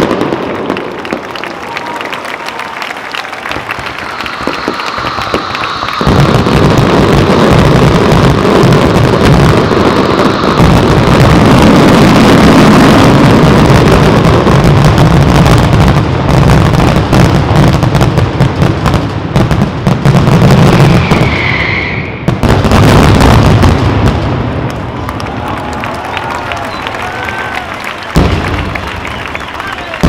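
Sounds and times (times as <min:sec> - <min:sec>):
firework whistle: 0:00.0 - 0:15.7, 0:20.4 - 0:23.8, 0:25.1 - 0:30.0
fireworks booming and cracking: 0:00.0 - 0:30.0.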